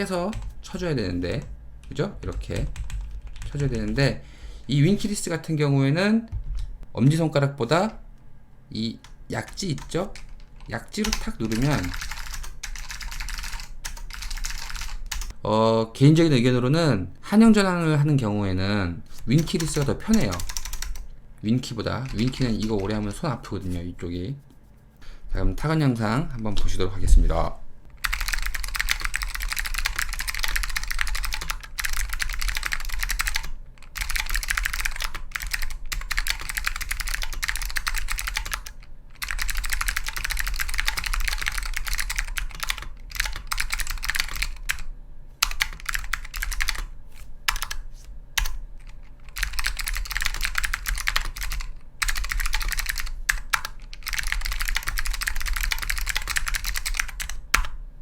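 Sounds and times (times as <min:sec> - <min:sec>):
clicky keyboard typing: 0:09.0 - 0:15.3, 0:19.1 - 0:21.1, 0:22.0 - 0:23.5, 0:28.0 - 0:46.9, 0:47.5 - 0:47.8, 0:48.4 - 0:57.8.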